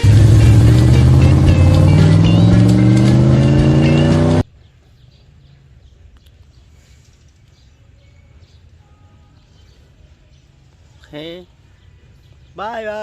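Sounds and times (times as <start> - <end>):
vehicle engine revving: 0.0 - 4.4.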